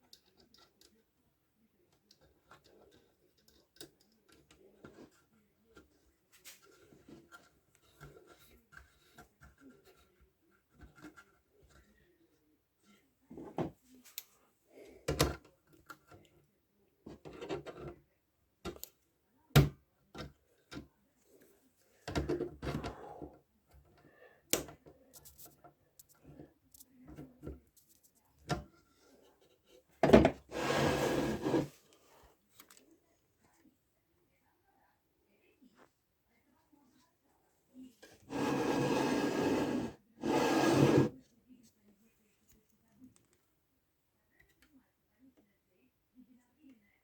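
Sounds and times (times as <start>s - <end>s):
scraping noise: 30.5s - 31.7s, 38.3s - 41.1s.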